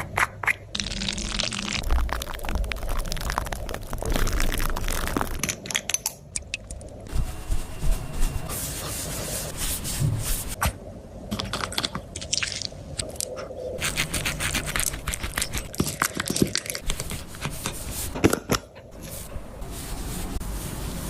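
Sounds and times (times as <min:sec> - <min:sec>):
crunching and chewing: 0:01.4 - 0:05.4.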